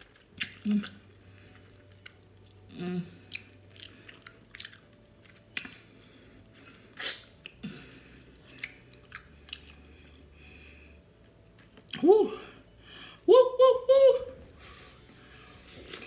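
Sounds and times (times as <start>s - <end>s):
chewing and biting food: 0.0s - 10.1s
wet mouth clicks and smacks: 5.5s - 5.8s, 7.0s - 7.6s, 8.5s - 9.8s.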